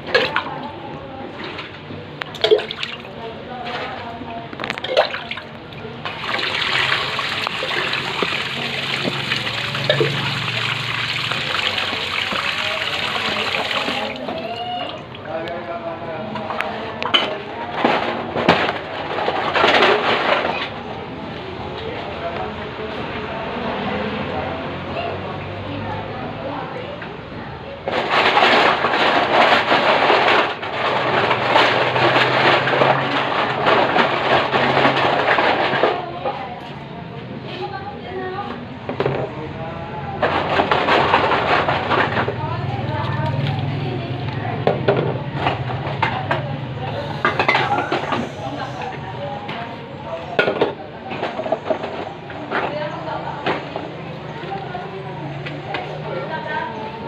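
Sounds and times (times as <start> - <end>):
running water splashing: 2.3 - 3.2, 4.8 - 15.3.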